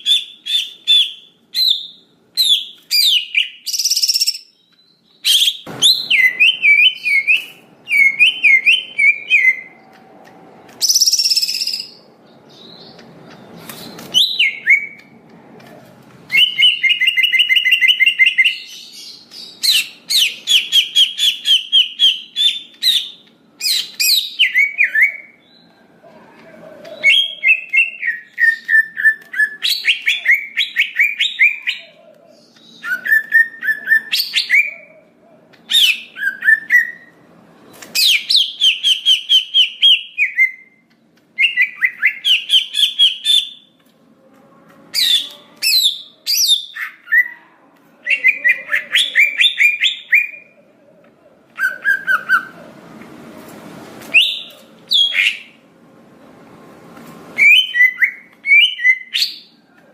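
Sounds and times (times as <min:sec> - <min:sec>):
bird singing whistles and trills: 0:00.0 - 0:09.8, 0:10.8 - 0:12.0, 0:57.4 - 0:59.5.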